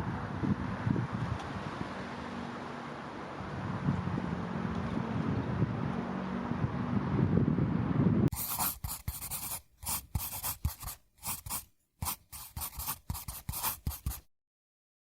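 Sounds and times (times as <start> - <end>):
close scratching and tapping: 8.3 - 14.2.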